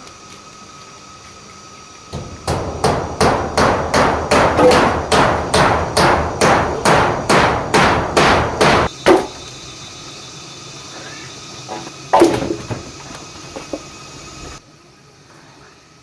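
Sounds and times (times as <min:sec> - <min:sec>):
hammer strikes: 0:02.2 - 0:09.4.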